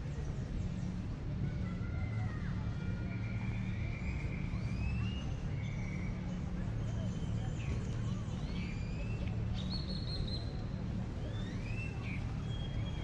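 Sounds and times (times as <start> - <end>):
low rumble of city traffic: 0.0 - 13.0
birds chirping and whistling: 11.3 - 13.0.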